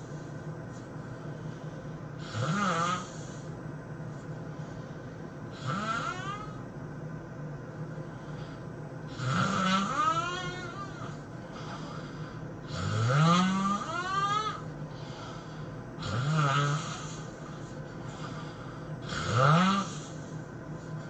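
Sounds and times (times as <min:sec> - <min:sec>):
person snoring loudly: 0:02.2 - 0:03.4, 0:05.5 - 0:06.6, 0:09.1 - 0:11.2, 0:12.6 - 0:14.6, 0:16.0 - 0:17.5, 0:19.0 - 0:20.2.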